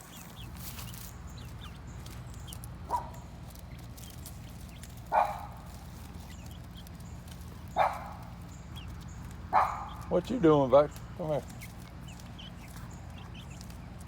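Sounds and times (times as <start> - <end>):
sharp animal calls: 9.5 - 10.1.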